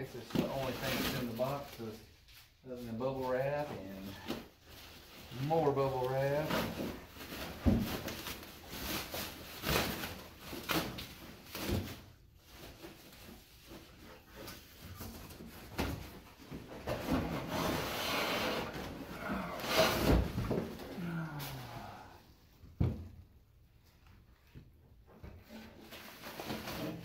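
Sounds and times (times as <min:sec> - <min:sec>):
bubble wrap rustling and crinkling: 0:00.0 - 0:16.4, 0:17.5 - 0:22.2
knocks and bumps of a box: 0:06.4 - 0:08.4, 0:18.6 - 0:21.6, 0:22.7 - 0:23.2.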